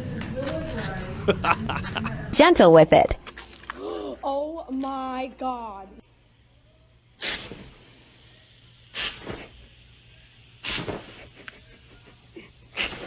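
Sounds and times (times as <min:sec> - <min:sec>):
animal hissing: 0:07.2 - 0:07.8, 0:08.9 - 0:09.7, 0:10.6 - 0:11.4, 0:12.4 - 0:13.0.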